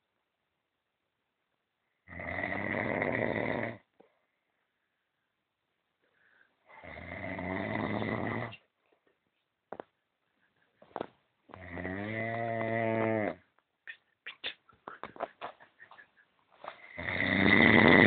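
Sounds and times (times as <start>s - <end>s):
man snoring: 2.1s - 3.8s, 6.8s - 8.6s, 11.6s - 13.4s, 16.9s - 18.0s.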